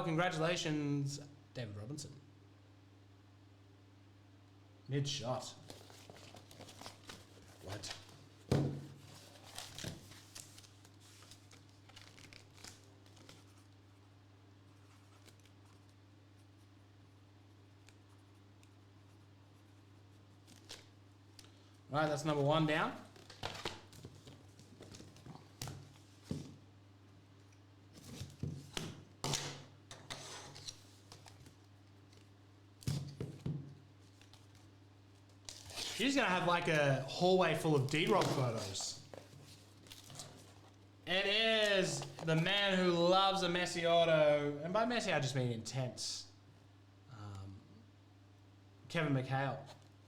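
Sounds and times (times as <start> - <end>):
low steady hum: 0.0 - 50.0
packaging rustling and crinkling: 5.6 - 13.8, 37.8 - 40.8
sliding rustle of cards: 5.6 - 13.9, 14.6 - 16.7, 29.4 - 32.3, 34.0 - 36.9.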